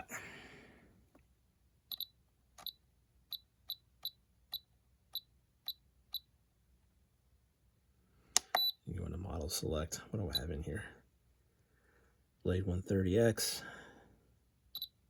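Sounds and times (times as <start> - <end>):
short high transmitter beeps: 8.5 - 8.8.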